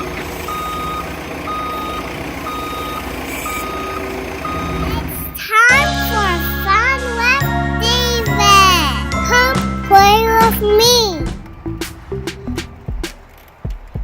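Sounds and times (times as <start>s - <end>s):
reversing vehicle backup beeps: 0.0s - 5.4s
low engine rumble: 0.0s - 13.0s
children's music jingle: 0.0s - 13.1s.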